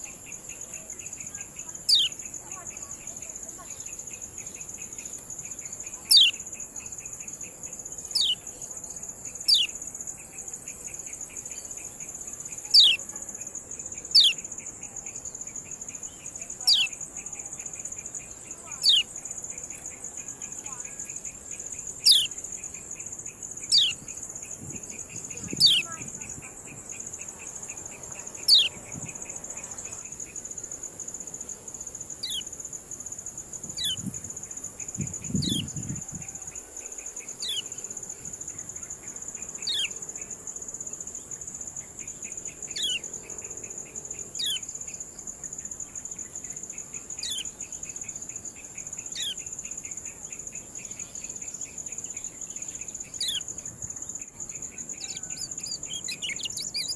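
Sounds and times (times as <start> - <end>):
high insect drone: 0.0 - 56.9
bird chirps sliding downward: 55.0 - 56.9.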